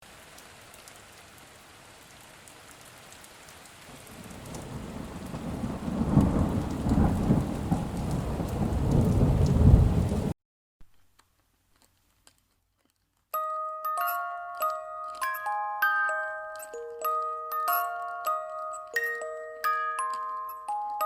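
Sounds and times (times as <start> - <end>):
rain hiss: 0.0 - 10.3
rolling thunder: 4.0 - 10.4.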